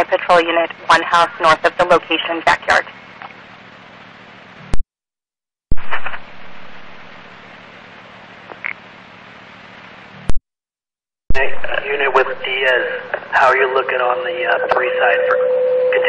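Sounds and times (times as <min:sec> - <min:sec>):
radio static hiss: 0:00.0 - 0:03.4, 0:11.3 - 0:15.4.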